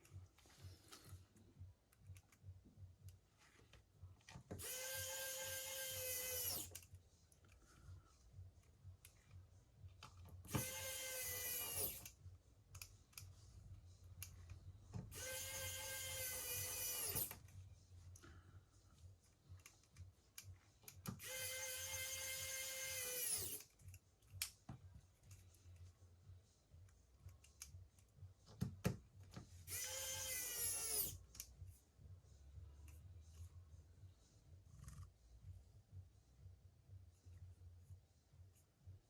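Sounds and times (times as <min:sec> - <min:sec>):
electric screwdriver whine: 0:04.6 - 0:06.8, 0:10.5 - 0:12.1, 0:15.2 - 0:17.3, 0:21.2 - 0:23.6, 0:29.7 - 0:31.2.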